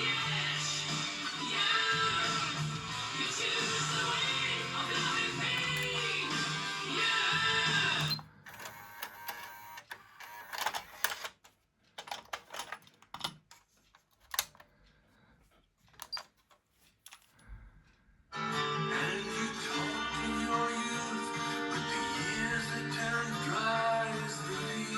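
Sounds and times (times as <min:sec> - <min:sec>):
music from cassette player: 0:00.0 - 0:11.4, 0:18.4 - 0:24.9
mechanical clicks and clunks: 0:05.4 - 0:14.7, 0:15.9 - 0:16.6.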